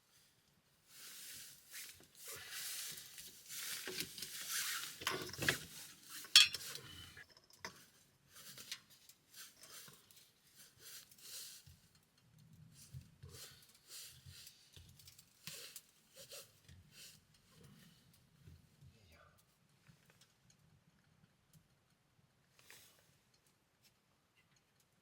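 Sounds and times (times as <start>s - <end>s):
light clicks of utensils: 1.8s - 18.3s
dishes rustling and scraping: 2.0s - 11.2s.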